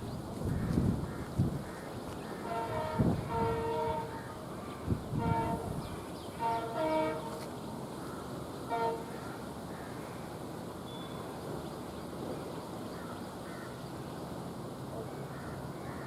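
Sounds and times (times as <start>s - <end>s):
diesel locomotive horn toot: 2.4s - 4.3s, 5.1s - 7.5s, 8.6s - 9.2s.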